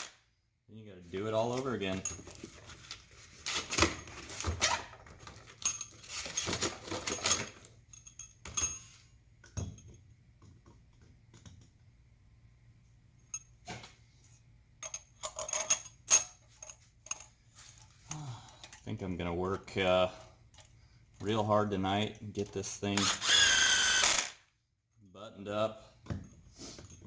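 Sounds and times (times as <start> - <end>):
metal tools clinking: 5.3 - 9.1, 14.3 - 18.9.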